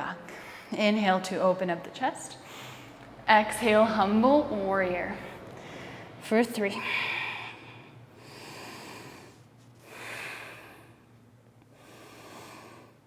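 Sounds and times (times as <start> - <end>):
woman breathing through the nose: 6.8 - 11.1, 11.7 - 13.0.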